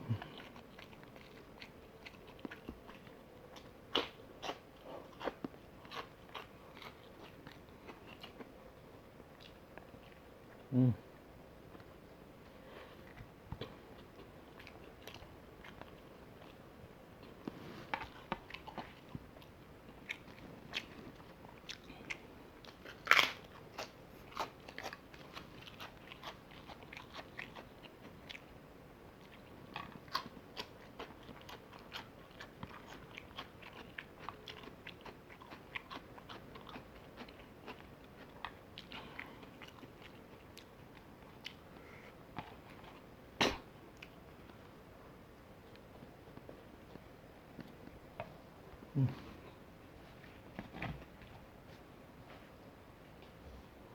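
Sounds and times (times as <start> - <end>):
person chewing crunchy food: 0.0 - 8.6, 11.7 - 16.6, 17.2 - 43.2.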